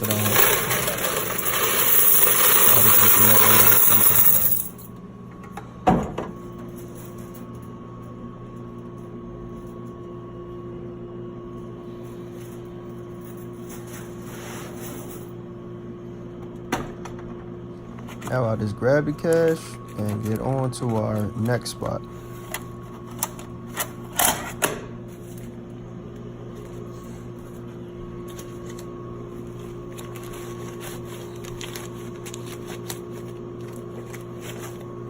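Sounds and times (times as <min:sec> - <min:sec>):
coins rattling: 0:00.0 - 0:04.9
vending machine electrical hum: 0:00.0 - 0:35.0.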